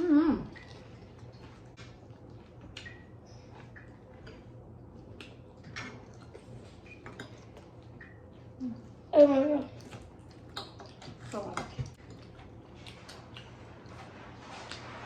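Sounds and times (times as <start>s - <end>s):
low steady hum: 0.0s - 15.0s
chewing: 0.5s - 9.0s, 9.6s - 15.0s.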